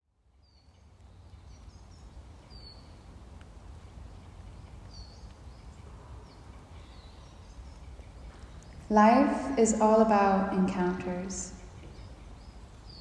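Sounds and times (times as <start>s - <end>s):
bird chirps: 0.4s - 3.1s, 4.1s - 9.3s, 11.4s - 13.0s.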